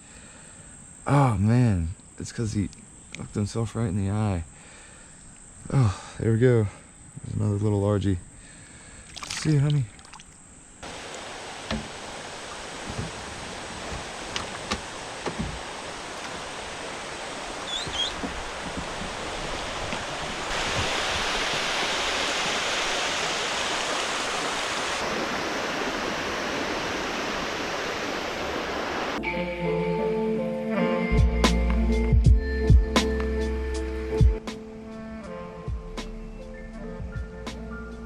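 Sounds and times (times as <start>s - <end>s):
creek water rushing: 9.1s - 29.2s
light knocks: 11.6s - 12.0s, 12.8s - 16.4s.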